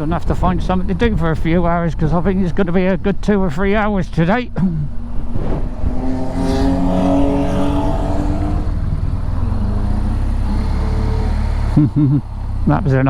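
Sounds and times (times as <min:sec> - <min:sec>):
motorcycle engine cruising: 0:00.0 - 0:13.0.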